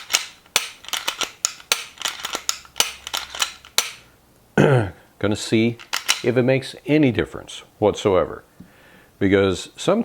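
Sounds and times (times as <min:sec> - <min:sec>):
pistol slide clicks and clacks: 0:00.0 - 0:04.0, 0:05.8 - 0:06.3
man talking: 0:04.6 - 0:08.5, 0:09.2 - 0:10.0.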